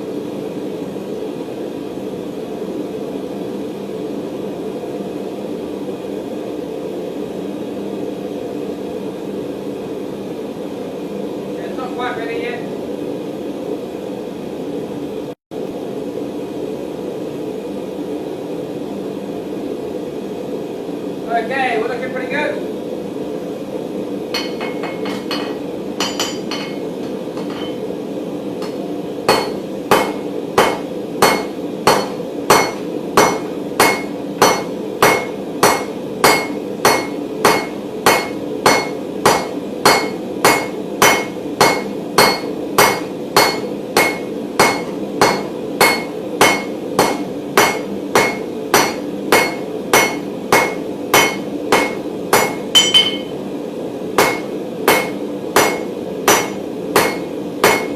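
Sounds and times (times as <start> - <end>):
steady hum: 0.0 - 57.9
hammer striking hot steel: 24.3 - 27.8, 28.6 - 53.4, 54.2 - 57.9.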